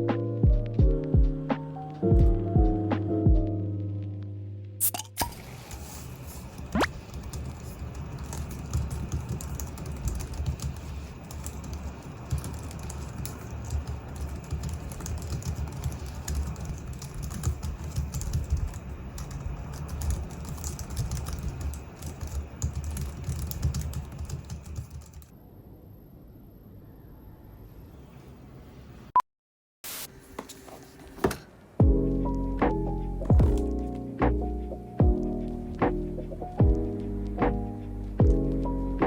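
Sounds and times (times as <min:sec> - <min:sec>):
keyboard typing clicks: 0:06.6 - 0:25.3.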